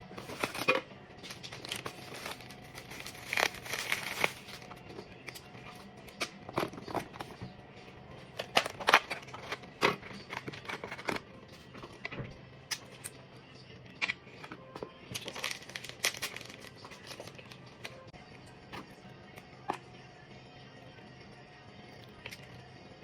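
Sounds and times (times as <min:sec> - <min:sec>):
crinkling and rustling: 0:00.1 - 0:07.5, 0:08.3 - 0:13.1, 0:14.0 - 0:18.0.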